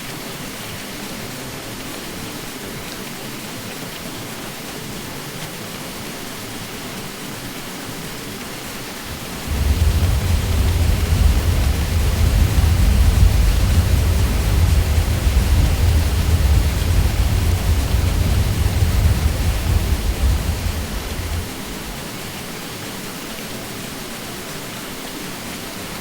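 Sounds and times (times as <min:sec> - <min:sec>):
ceiling fan whooshing hum: 0:09.0 - 0:22.2
deep low hum: 0:09.1 - 0:22.0.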